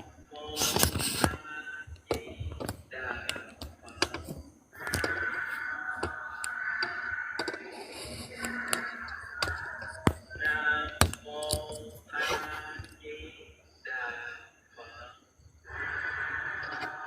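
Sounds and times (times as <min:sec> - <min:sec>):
person chanting in held tones: 0:00.0 - 0:17.0
sharp clicks: 0:02.0 - 0:12.0.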